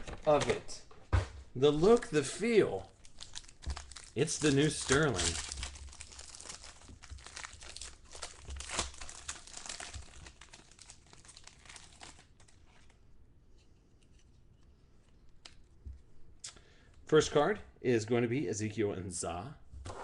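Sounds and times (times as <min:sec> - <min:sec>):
packaging tearing and crinkling: 0:02.8 - 0:12.9.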